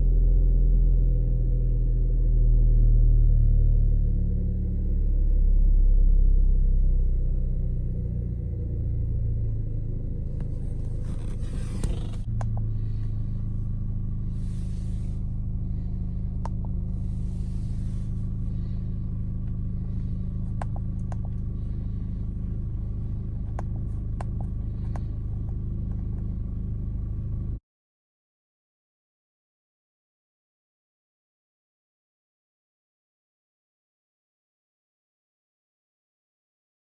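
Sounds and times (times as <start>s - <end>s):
car engine idling with misfire: 9.6s - 27.6s.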